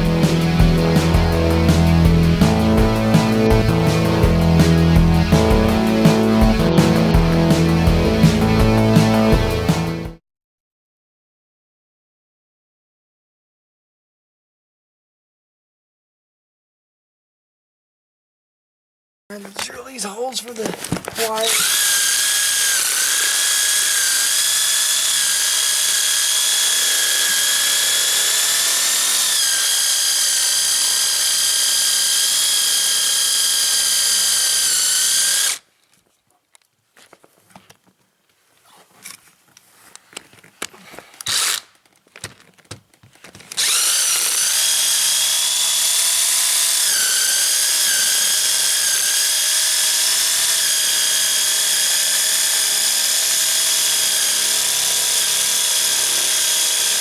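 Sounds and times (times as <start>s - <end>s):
power drill motor whine: 20.9s - 35.6s, 41.2s - 41.7s, 43.5s - 57.0s.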